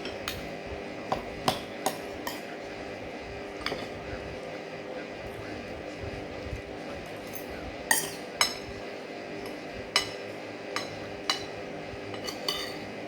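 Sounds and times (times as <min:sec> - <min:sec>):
utensils clinking against a plate: 0:00.0 - 0:00.5, 0:01.1 - 0:02.6, 0:03.5 - 0:04.1, 0:07.0 - 0:13.0.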